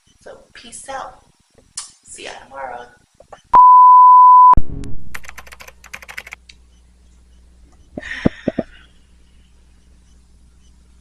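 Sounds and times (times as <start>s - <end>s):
faint low hum: 2.6s - 11.0s
light typing clicks: 5.1s - 6.6s.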